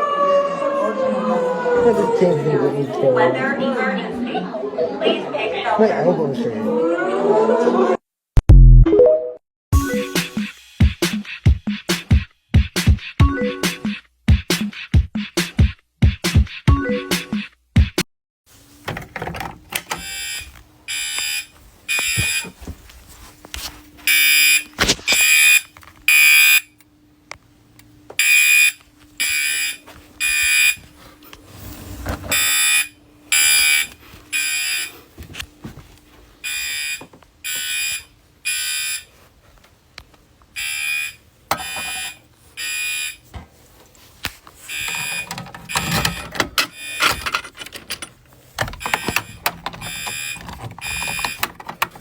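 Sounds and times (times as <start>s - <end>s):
fire alarm horn blasts: 20.0s - 22.5s, 24.1s - 26.7s, 28.2s - 30.8s, 32.3s - 34.9s, 36.4s - 39.1s, 40.6s - 43.2s, 44.7s - 47.1s.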